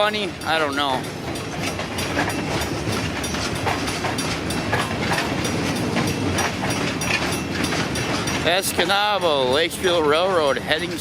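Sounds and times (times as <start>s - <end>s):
train rumbling: 0.0s - 11.0s
train wheels clicking on rails: 0.0s - 11.0s.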